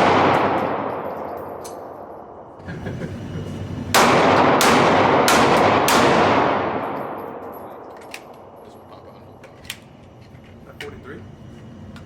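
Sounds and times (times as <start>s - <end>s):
pistol shots echoing: 0.0s - 2.4s, 4.0s - 8.6s.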